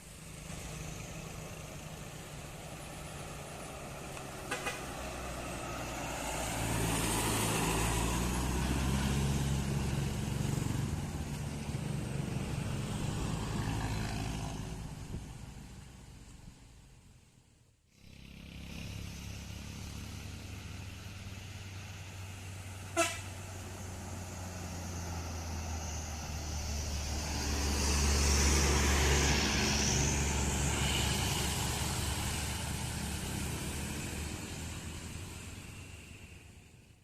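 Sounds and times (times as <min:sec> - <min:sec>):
heavy vehicle engine humming: 0:00.0 - 0:37.0
short sharp horn toot: 0:23.0 - 0:23.4.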